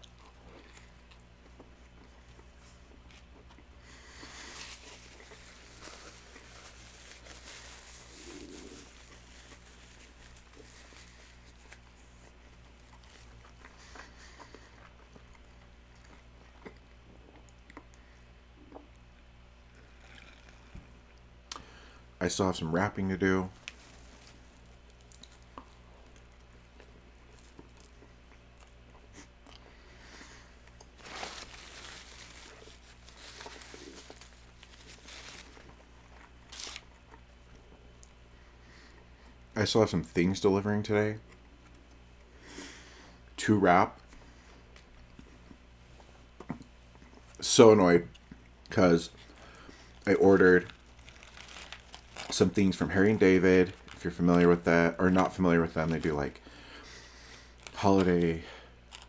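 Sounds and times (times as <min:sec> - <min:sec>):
faint chewing: 0:00.0 - 0:22.0, 0:23.5 - 0:39.6, 0:44.0 - 0:47.4, 0:48.1 - 0:54.1, 0:55.8 - 0:59.0
steady low hum: 0:00.0 - 0:59.0
faint crinkling: 0:00.2 - 0:16.2, 0:21.6 - 0:38.2, 0:48.2 - 0:59.0.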